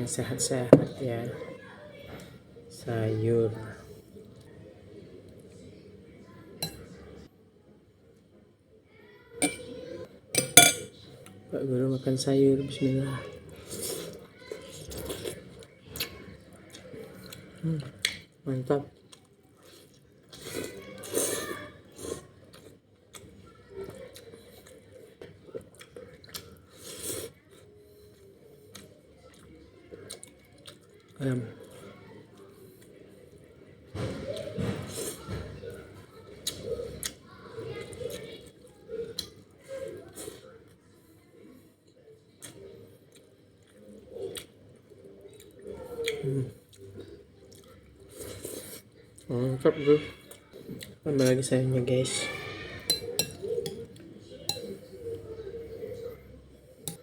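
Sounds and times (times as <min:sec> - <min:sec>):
man chewing wetly: 0:21.9 - 0:31.8, 0:42.4 - 0:49.4.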